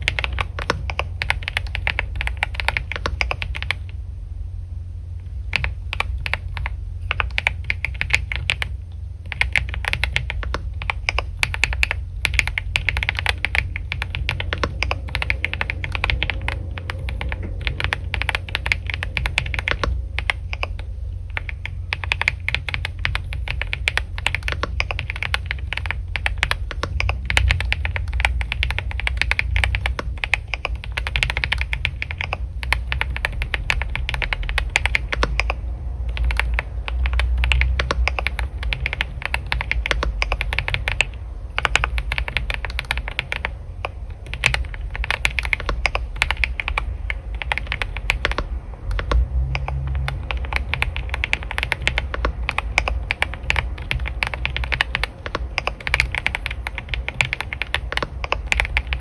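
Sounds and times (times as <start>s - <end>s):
keyboard key clicks: 0.0s - 4.0s, 5.5s - 59.0s
steady low hum: 0.0s - 59.0s.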